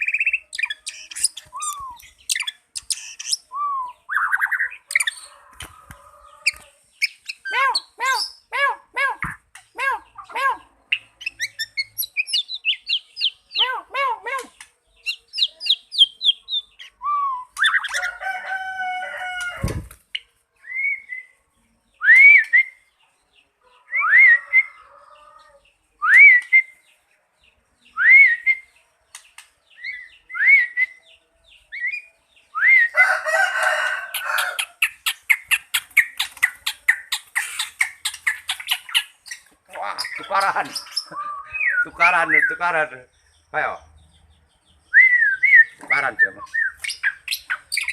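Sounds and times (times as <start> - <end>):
rapid bird chattering: 0.0 - 3.5, 34.1 - 42.8, 45.7 - 47.9
longer multi-pitched bird calls: 0.0 - 47.9.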